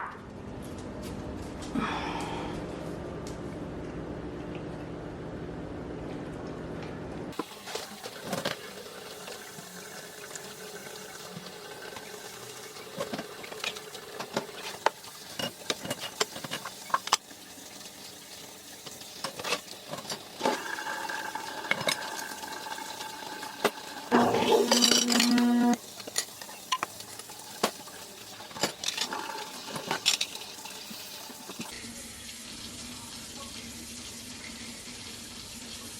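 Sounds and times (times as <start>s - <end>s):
tap water running into sink: 7.3s - 35.9s
dishes clinking: 24.1s - 26.9s.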